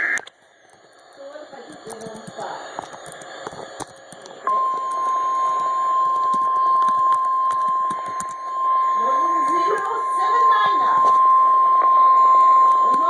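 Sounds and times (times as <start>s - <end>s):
clicks: 0.0s - 8.6s, 9.4s - 13.0s
faint radio static: 0.0s - 13.0s
steady high alert tone: 4.4s - 13.0s.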